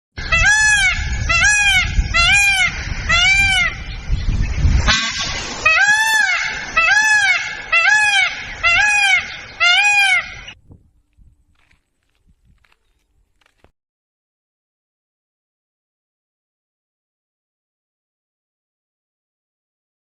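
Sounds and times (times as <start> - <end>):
bird calling: 0.2 - 10.6.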